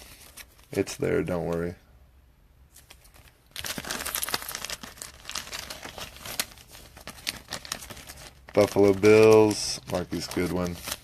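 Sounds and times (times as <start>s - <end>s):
card pack wrapper crinkling: 2.7s - 11.0s.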